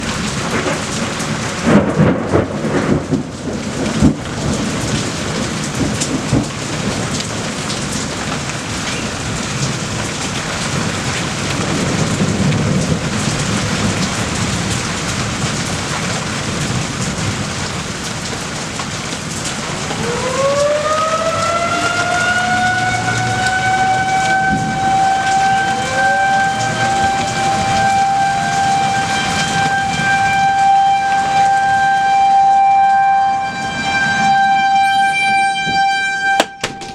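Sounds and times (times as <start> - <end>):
heavy rain: 0.0 - 36.9
thunder crackling: 0.0 - 36.9
siren winding up: 20.1 - 36.9.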